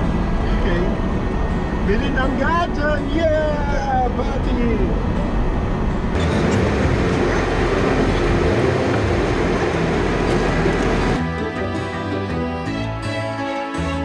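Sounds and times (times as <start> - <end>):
car road and engine noise: 0.0 - 11.3
background music: 5.0 - 14.0.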